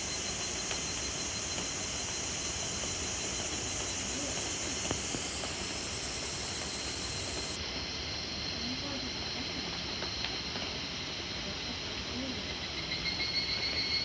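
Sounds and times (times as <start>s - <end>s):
steady rain falling: 0.1s - 7.8s.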